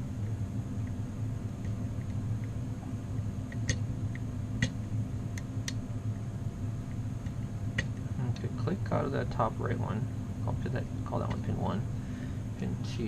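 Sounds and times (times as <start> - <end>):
air handler humming: 0.0 - 13.0.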